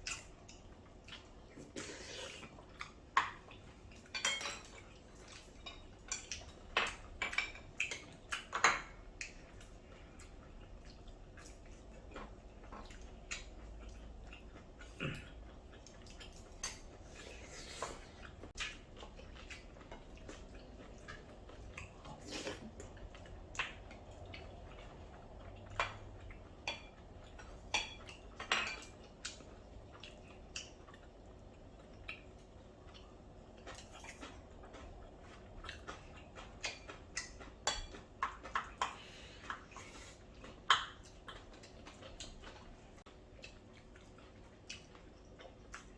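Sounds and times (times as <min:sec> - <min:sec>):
cutlery clinking on plates: 0:04.0 - 0:09.0, 0:27.7 - 0:29.0.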